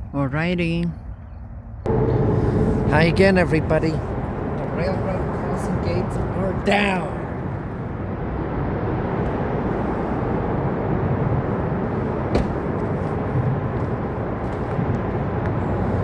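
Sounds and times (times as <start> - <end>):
freight train rumbling: 1.8 - 16.0.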